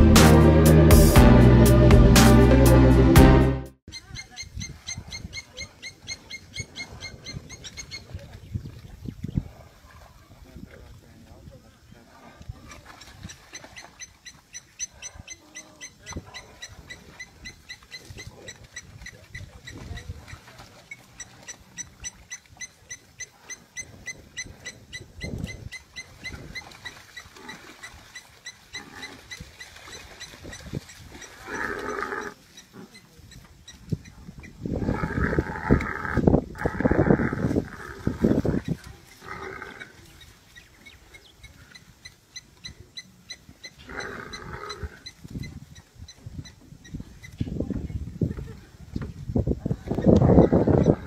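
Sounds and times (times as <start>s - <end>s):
harsh animal calls: 21.0s - 40.7s, 41.4s - 45.2s
animal growling: 34.7s - 40.1s.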